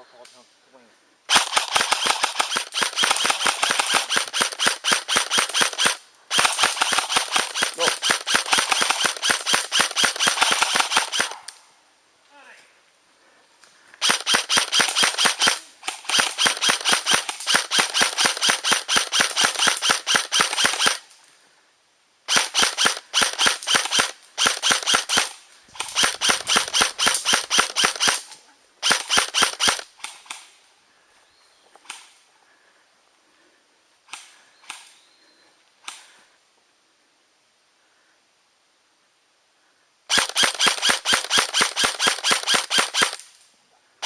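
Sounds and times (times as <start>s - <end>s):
airsoft gun firing rapidly: 1.3s - 11.4s, 14.0s - 21.0s, 22.3s - 29.8s, 40.1s - 43.2s.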